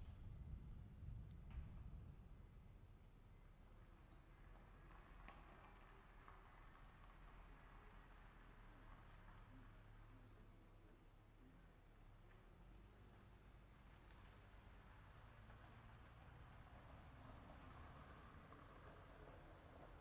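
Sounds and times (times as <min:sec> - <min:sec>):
low rumble: 0:00.0 - 0:07.5
crickets trilling: 0:00.0 - 0:20.0.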